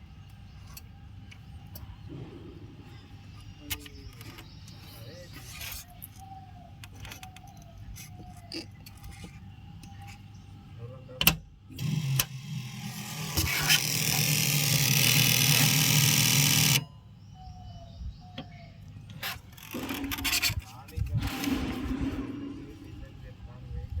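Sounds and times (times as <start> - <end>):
generator starter cranking: 11.2 - 16.9, 19.1 - 22.7.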